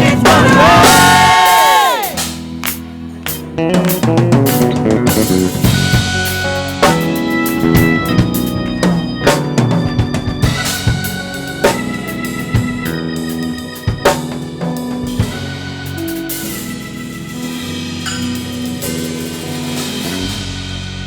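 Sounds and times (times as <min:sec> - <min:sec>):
drum kit hits: 0:00.0 - 0:21.0
organ sustained chords: 0:00.0 - 0:21.0.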